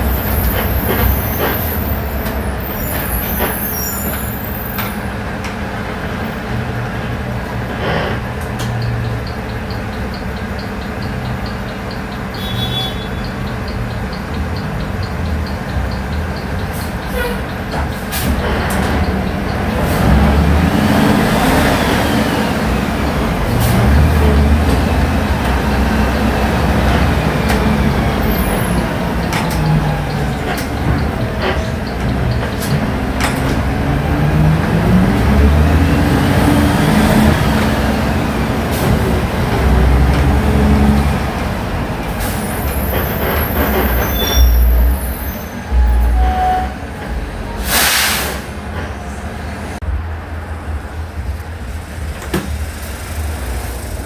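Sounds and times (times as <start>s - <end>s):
bus engine accelerating: 0.0s - 54.0s
sharp clicks and knocks: 23.1s - 35.3s.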